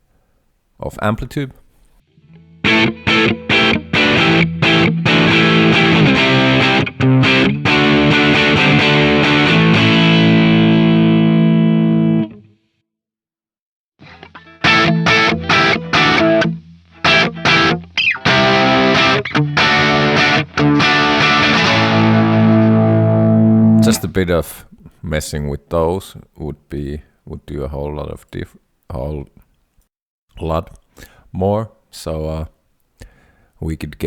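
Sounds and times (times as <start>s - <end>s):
distorted electric guitar: 2.1s - 12.4s, 14.0s - 24.2s.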